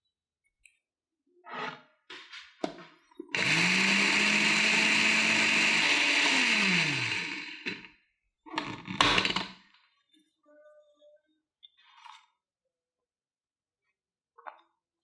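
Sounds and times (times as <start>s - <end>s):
blender motor hum: 3.3s - 7.9s.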